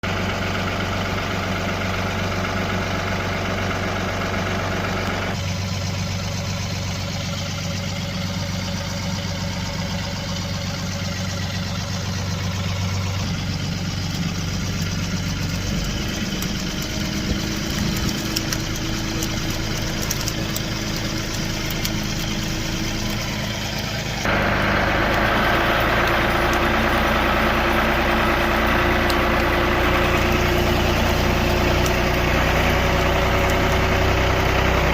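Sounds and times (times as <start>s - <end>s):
motor engine running: 0.0s - 34.9s.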